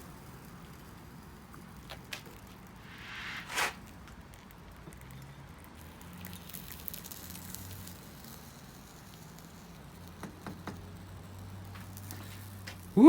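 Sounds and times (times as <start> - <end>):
light crackles and ticks: 0.0 - 2.8, 3.9 - 13.0
furnace humming: 0.0 - 4.1.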